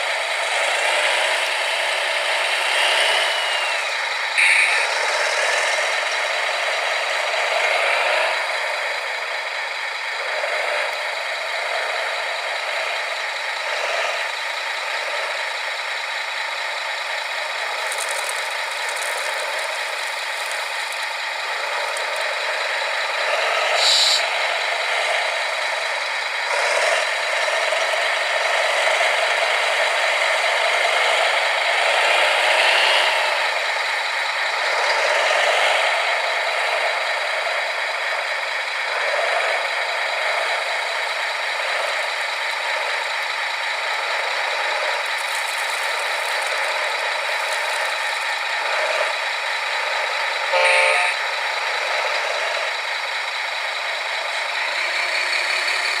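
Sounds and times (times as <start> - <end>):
electric motors and gearboxes whining: 0.0 - 56.0
rattle of plastic and metal parts: 17.7 - 21.2, 45.0 - 48.4.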